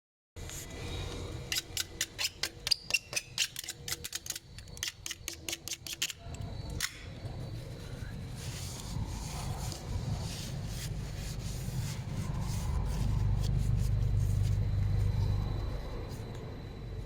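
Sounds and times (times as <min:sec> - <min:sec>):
low hum: 0:06.3 - 0:17.0.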